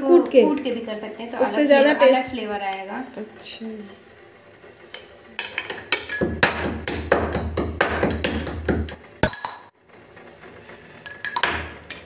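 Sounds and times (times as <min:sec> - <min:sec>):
pestle pounding in a mortar: 0:06.0 - 0:09.0.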